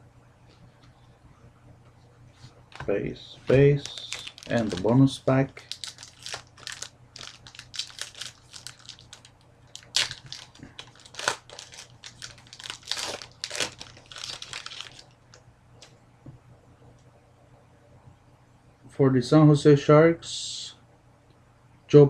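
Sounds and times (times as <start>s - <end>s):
wrapper being torn and crinkled: 3.8s - 15.3s.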